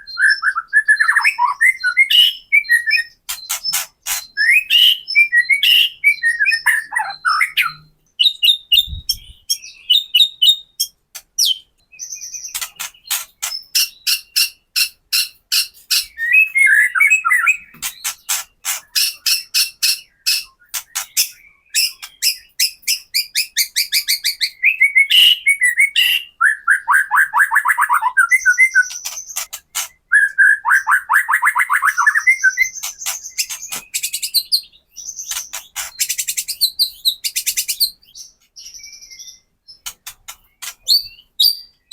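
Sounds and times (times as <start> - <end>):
bird harsh rattling call: 3.2 - 4.9, 12.4 - 16.3, 17.4 - 24.4, 27.7 - 30.1, 31.3 - 36.7, 39.8 - 41.2.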